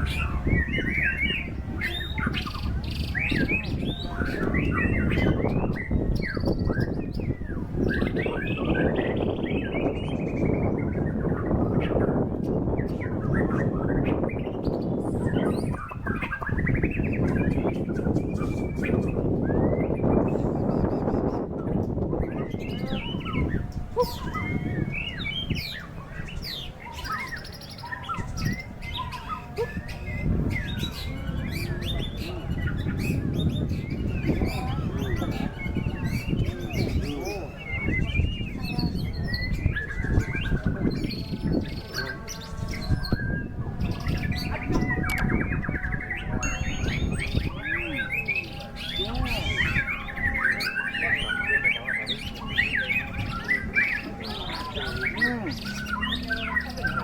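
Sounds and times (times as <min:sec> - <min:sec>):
steady low rumbling: 0:00.0 - 0:26.4
bird singing whistled notes: 0:00.0 - 0:57.0.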